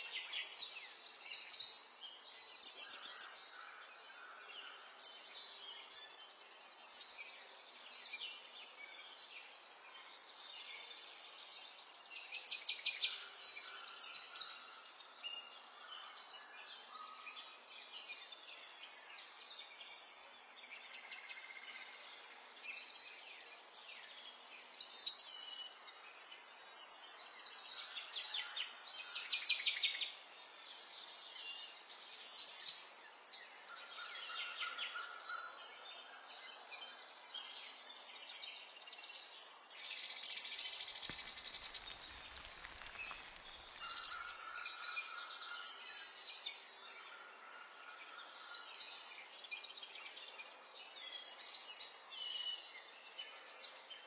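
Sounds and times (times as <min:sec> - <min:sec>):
songbirds singing and chirping: 0:00.0 - 0:54.0
faint steady hiss: 0:36.9 - 0:44.7.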